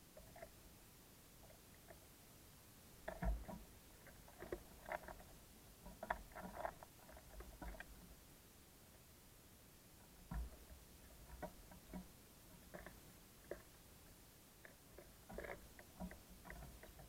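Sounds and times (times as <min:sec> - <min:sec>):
birds pecking on a feeder: 0:03.0 - 0:08.2, 0:10.0 - 0:17.0.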